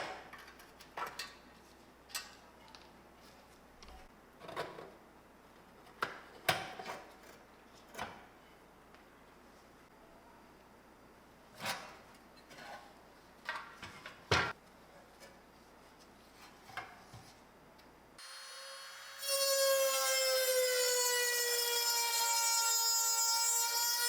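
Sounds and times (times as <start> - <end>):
power tool high whine: 18.2 - 24.0.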